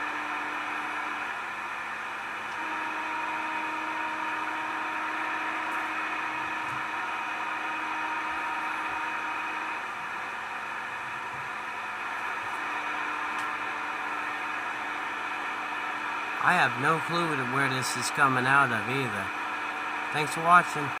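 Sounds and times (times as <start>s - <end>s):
radio static hiss: 12.5s - 21.0s.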